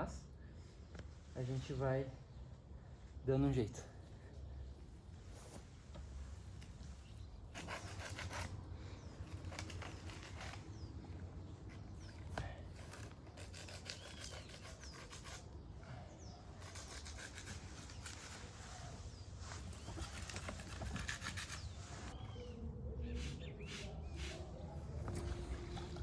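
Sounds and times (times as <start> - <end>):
scraping on brick and mortar: 7.5 - 10.9, 11.7 - 15.5, 16.5 - 22.2, 23.1 - 26.0
bird chirps: 17.8 - 26.0.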